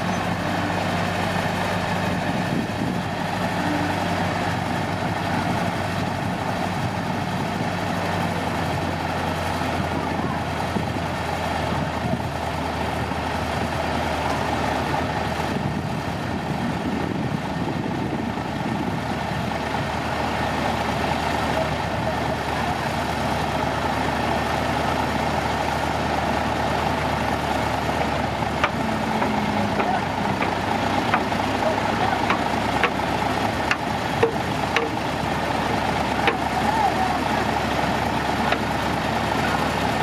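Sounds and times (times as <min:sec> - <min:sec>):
diesel engine running: 0:00.0 - 0:40.0.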